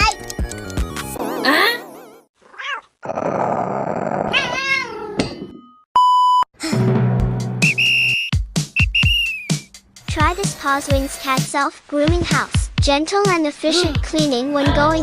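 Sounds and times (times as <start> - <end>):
cat meowing and yowling: 2.5 - 2.9, 4.3 - 5.2
beep tone: 6.0 - 6.5.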